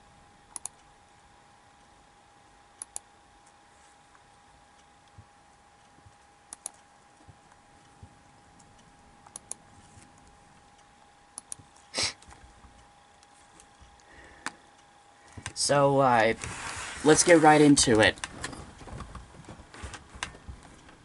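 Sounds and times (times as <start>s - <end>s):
faint steady hum: 0.0s - 21.0s
mouse and keyboard clicks: 6.5s - 6.8s, 8.7s - 10.2s, 11.4s - 12.4s.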